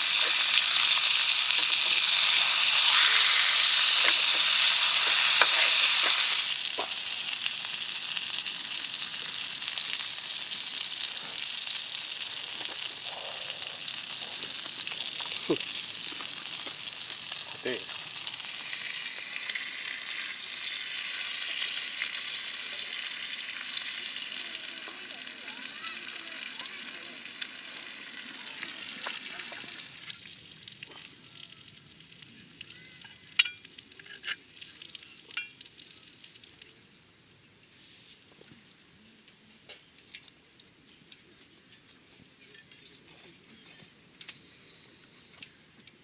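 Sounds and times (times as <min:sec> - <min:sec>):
meat sizzling in a skillet: 0:00.0 - 0:36.7.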